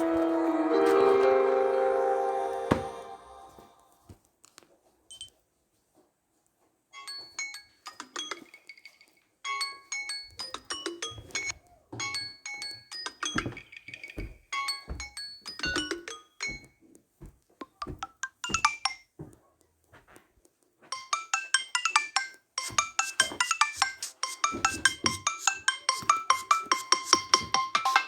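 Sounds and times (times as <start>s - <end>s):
phone ringtone melody: 0.0s - 3.8s.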